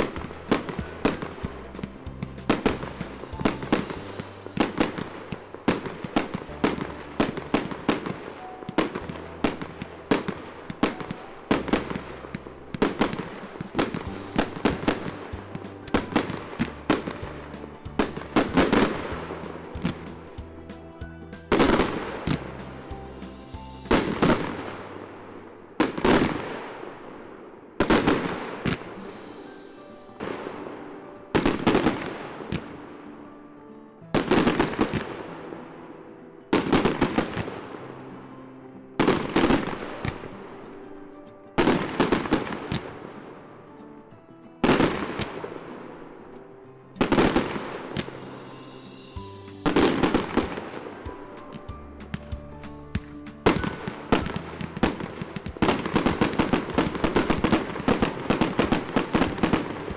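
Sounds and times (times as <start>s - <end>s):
fireworks banging and crackling: 0.0s - 25.0s, 25.8s - 27.0s, 27.8s - 32.8s, 39.0s - 40.3s, 41.6s - 43.0s, 47.0s - 59.9s
background music: 0.0s - 59.9s.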